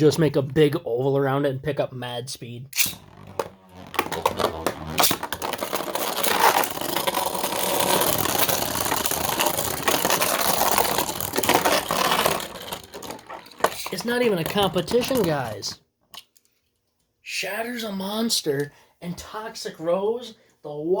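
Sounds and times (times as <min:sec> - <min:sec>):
spinning tops whirring: 0:02.8 - 0:15.5.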